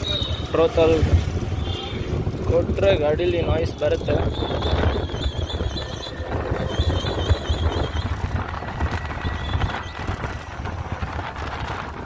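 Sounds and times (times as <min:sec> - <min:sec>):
road and wind rumble: 0:00.0 - 0:12.0
high-pitched wavering squeal: 0:04.3 - 0:10.6.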